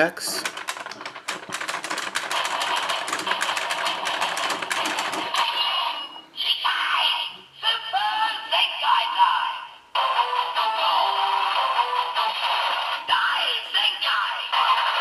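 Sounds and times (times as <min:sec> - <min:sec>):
toy sound effect rattling clicks: 0:00.4 - 0:05.6.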